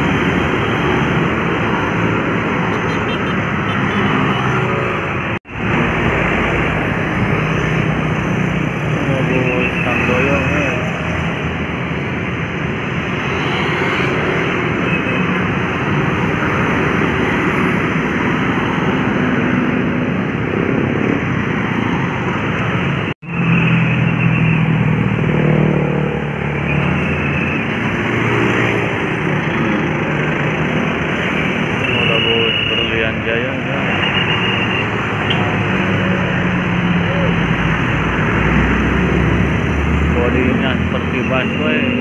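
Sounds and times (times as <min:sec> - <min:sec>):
roadside traffic passing: 0:00.0 - 0:42.0.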